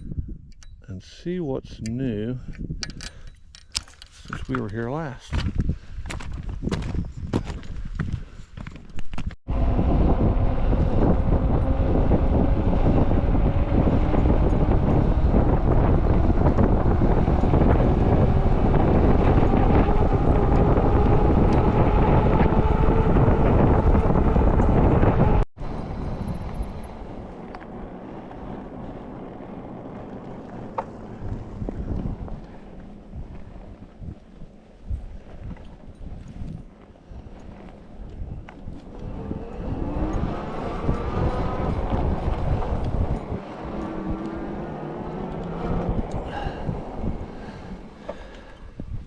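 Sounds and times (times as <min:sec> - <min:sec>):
wind buffeting microphone: 0:00.0 - 0:49.0
electric motor whine: 0:09.5 - 0:32.1, 0:38.5 - 0:47.9.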